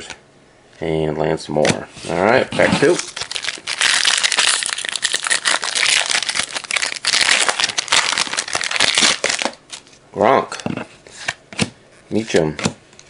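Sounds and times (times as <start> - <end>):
plastic wrapper crinkling: 2.6 - 10.0.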